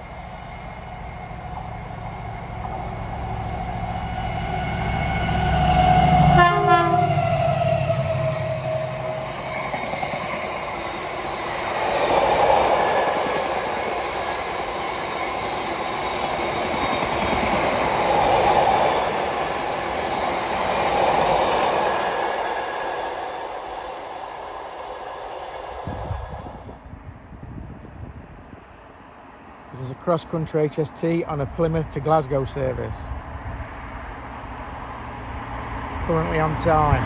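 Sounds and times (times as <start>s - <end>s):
wheels rumbling on rail: 0.0s - 29.7s, 31.4s - 37.0s
diesel locomotive engine passing: 0.0s - 37.0s
locomotive horn blast: 4.2s - 9.4s.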